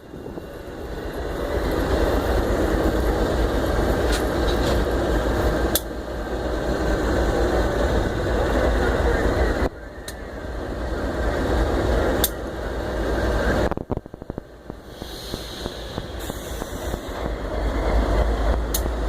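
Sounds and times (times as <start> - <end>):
diesel locomotive rumble: 0.0 - 19.0
sharp clicks: 18.7 - 18.9.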